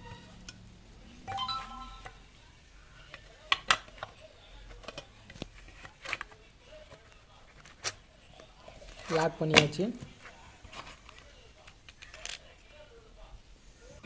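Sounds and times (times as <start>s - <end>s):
plastic parts clicking and tapping: 3.1s - 8.0s, 10.7s - 12.4s.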